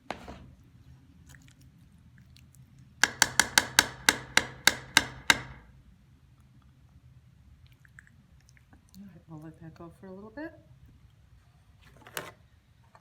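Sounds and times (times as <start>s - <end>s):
sharp metallic taps on cookware: 3.0s - 5.7s.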